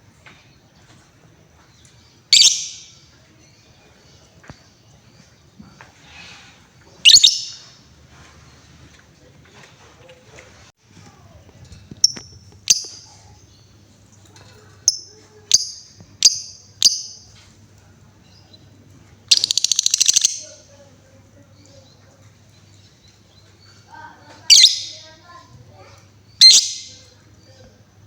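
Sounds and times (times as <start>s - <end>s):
lovebird rattling trill: 2.3s - 2.9s, 7.0s - 7.7s, 19.3s - 20.6s
lovebird chirping: 2.3s - 3.7s, 7.0s - 7.7s, 14.8s - 17.3s, 19.3s - 20.7s, 24.4s - 25.1s, 26.3s - 27.2s.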